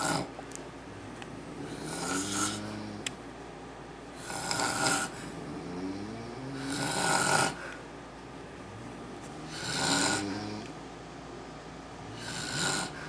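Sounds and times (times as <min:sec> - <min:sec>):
man snoring: 0:00.0 - 0:00.3, 0:01.5 - 0:03.0, 0:04.2 - 0:07.7, 0:09.4 - 0:10.7, 0:12.1 - 0:13.0.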